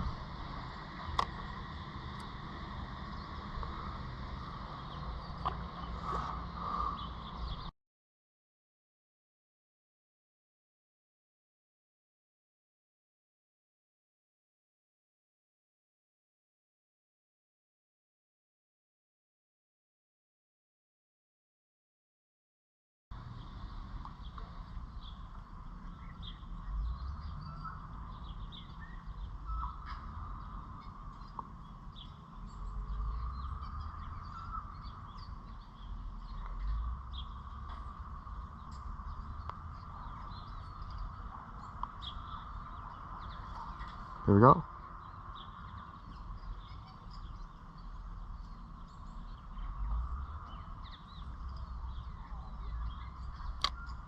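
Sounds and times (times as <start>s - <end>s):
low uneven rumble: 0.0s - 7.7s, 23.2s - 54.0s
small birds chirping: 0.0s - 7.7s, 23.2s - 54.0s.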